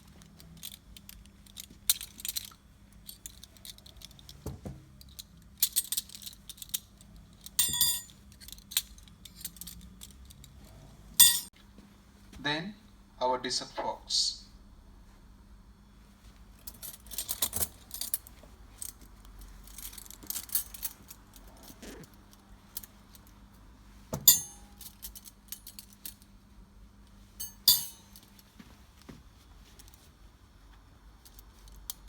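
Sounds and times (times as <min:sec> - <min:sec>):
metal cutlery clinking: 0:07.6 - 0:10.5, 0:11.2 - 0:11.5, 0:24.2 - 0:26.1, 0:27.4 - 0:28.3
sharp ringing clinks: 0:24.3 - 0:24.9, 0:27.4 - 0:28.2.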